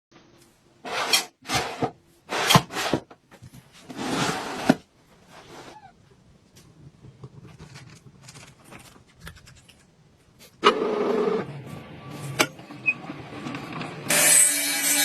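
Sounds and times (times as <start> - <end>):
tool scraping across wood: 3.8 - 4.8.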